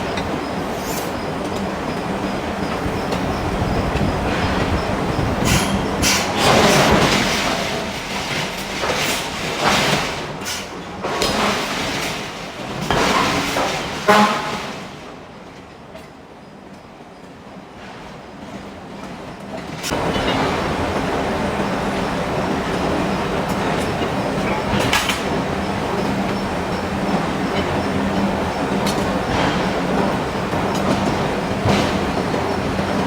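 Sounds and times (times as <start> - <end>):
heavy machinery rumble and hum: 19.9 - 33.0.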